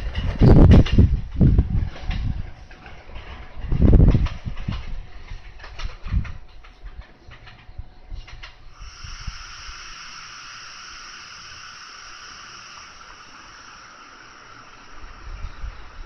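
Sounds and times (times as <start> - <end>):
train hissing on rails: 8.6 - 16.0.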